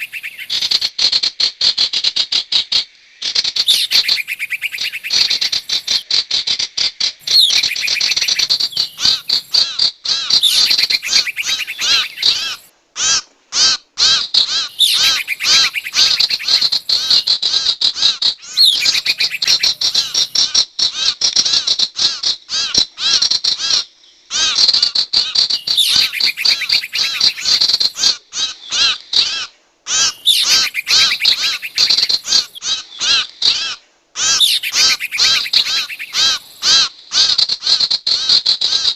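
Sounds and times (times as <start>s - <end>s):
songbird chirping call: 0.0s - 0.9s, 3.2s - 6.1s, 7.1s - 12.7s, 14.5s - 17.4s, 18.4s - 20.6s, 25.4s - 36.7s.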